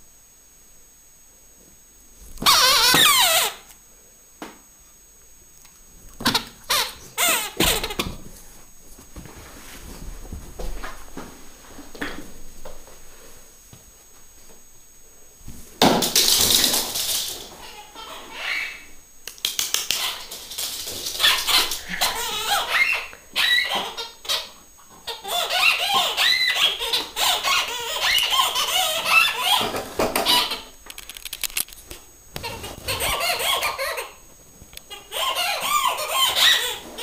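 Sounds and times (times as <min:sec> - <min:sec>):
squeaky toy squeaking: 0:02.4 - 0:03.6, 0:06.7 - 0:08.0, 0:25.1 - 0:29.6, 0:32.9 - 0:34.1, 0:35.1 - 0:37.0.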